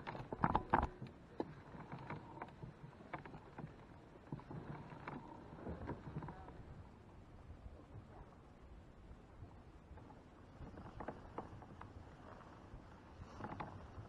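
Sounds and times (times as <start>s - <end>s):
paddle splashes: 9.8s - 14.0s.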